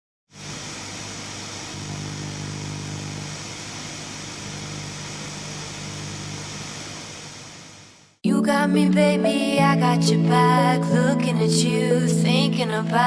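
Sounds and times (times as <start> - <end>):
constant hiss: 0.3 - 8.2
motor hum: 0.3 - 8.2.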